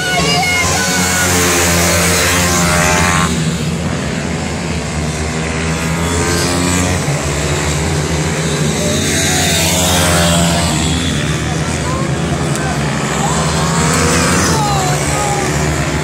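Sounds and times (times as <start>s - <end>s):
pit bike engines revving: 0.0s - 16.0s.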